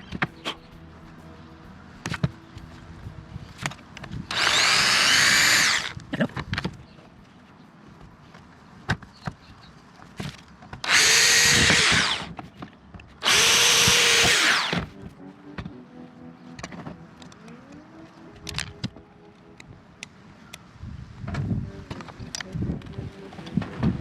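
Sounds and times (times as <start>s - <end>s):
power drill boring into plastic: 4.3s - 6.0s, 10.9s - 12.3s, 13.2s - 14.9s.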